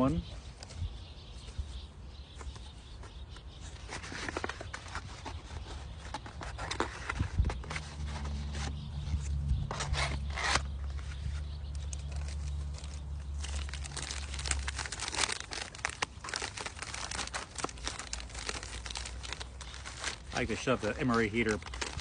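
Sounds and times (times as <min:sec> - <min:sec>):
plastic crinkling: 0:11.7 - 0:22.0
plastic packaging tearing: 0:11.9 - 0:22.0.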